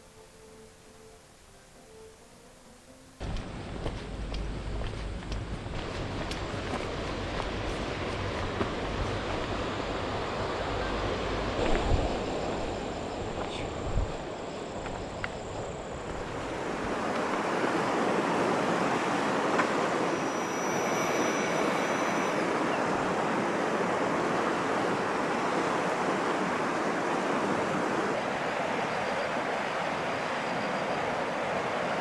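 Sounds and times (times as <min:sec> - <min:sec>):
river water rushing: 0:15.8 - 0:32.0.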